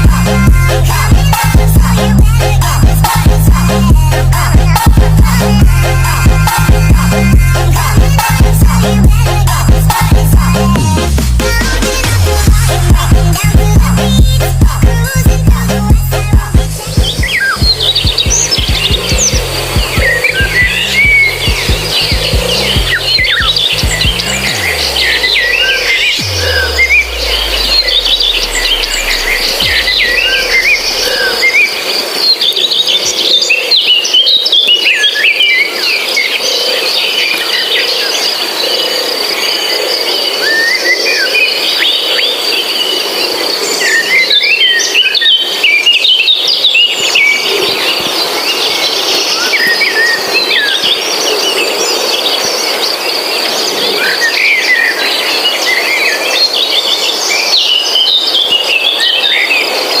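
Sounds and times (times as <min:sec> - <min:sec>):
birds chirping and twittering: 0:00.0 - 1:00.0
insects droning: 0:14.7 - 1:00.0.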